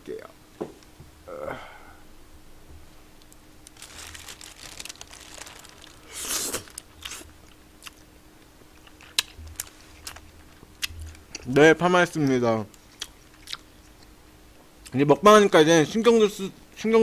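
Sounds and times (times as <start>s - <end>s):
chewing and mouth noises: 6.2s - 8.1s, 12.8s - 14.2s.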